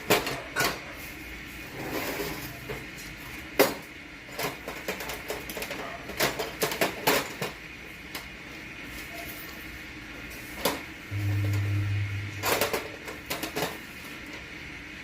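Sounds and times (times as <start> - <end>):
low hum: 11.1 - 13.0.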